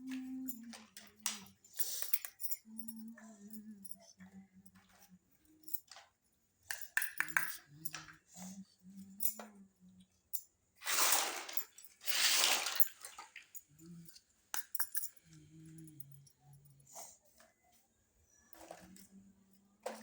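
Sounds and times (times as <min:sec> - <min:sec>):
toy dishes clinking: 0:06.7 - 0:08.2, 0:14.6 - 0:15.3
water gushing: 0:10.8 - 0:13.2.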